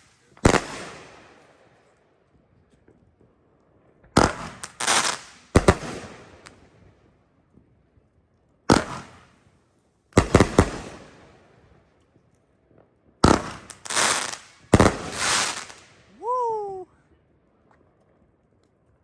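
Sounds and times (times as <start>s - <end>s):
firework shots: 0.0s - 1.4s, 4.1s - 6.6s, 8.7s - 9.4s, 10.2s - 11.4s, 13.2s - 16.1s
firework crackling: 4.2s - 6.6s, 8.7s - 9.4s, 13.2s - 16.8s.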